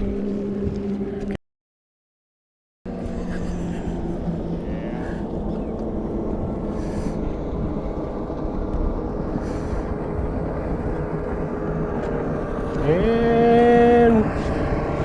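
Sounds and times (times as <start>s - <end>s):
motorboat engine running: 0.0s - 1.4s, 2.9s - 15.0s.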